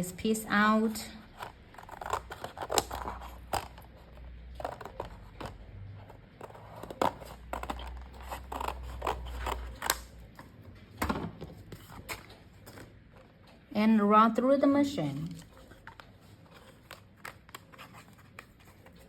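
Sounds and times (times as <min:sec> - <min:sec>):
scissors snipping cardstock: 0:01.4 - 0:04.0, 0:06.4 - 0:10.2
paper rustling: 0:15.3 - 0:19.0.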